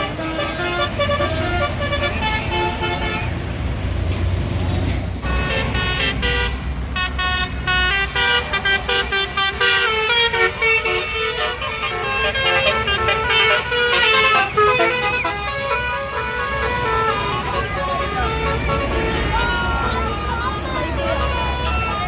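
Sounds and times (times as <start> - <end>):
bus rumbling past: 0.0 - 22.0
musical air horn tune: 5.2 - 22.0.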